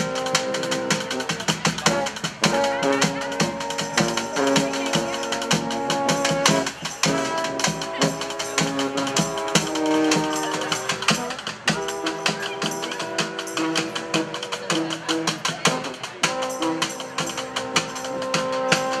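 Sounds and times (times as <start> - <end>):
brass band horn chords: 0.0 - 19.0
steady drum beat: 0.0 - 19.0.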